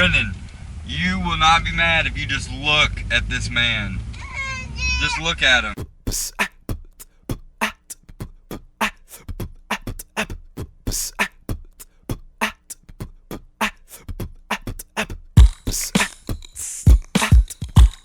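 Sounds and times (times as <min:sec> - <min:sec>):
beatbox percussive hits: 0:05.8 - 0:18.0
hissing cymbal-like sounds: 0:15.4 - 0:18.0.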